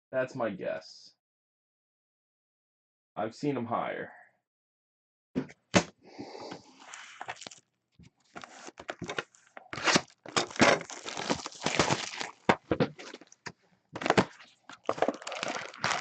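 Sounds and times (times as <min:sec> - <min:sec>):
card pack wrappers crinkling: 0:06.8 - 0:07.6, 0:08.3 - 0:13.4, 0:14.0 - 0:16.0.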